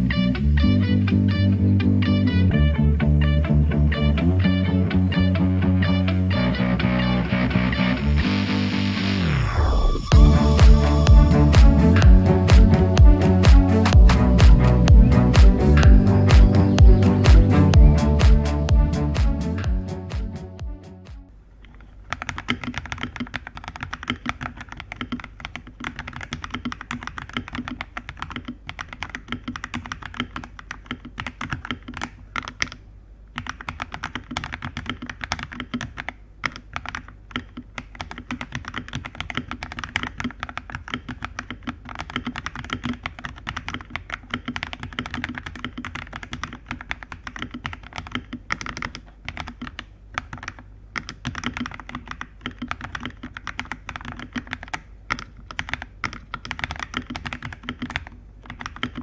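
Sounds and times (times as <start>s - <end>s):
fast mechanical keyboard typing: 10.1s - 18.6s, 21.6s - 59.0s.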